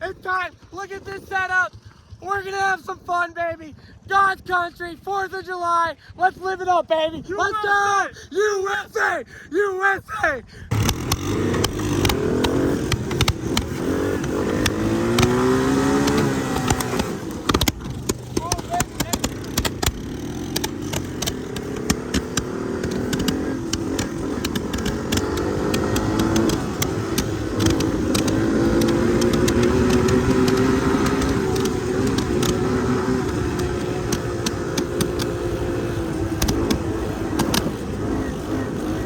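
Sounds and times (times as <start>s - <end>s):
sharp clicks: 10.7s - 39.0s
small vehicle engine revving: 10.7s - 39.0s.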